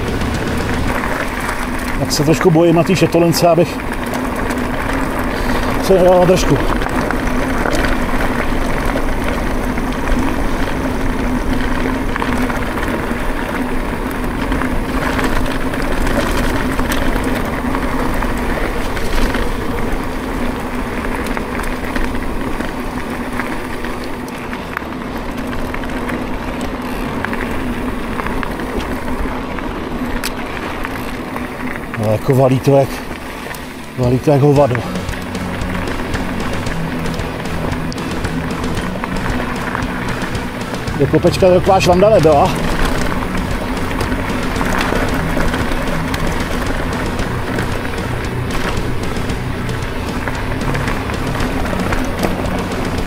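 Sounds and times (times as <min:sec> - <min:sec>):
steady low hum: 0:00.0 - 0:03.1, 0:33.0 - 0:53.0
bike clicks and rattles: 0:00.0 - 0:53.0
tyres rolling on gravel: 0:00.0 - 0:53.0.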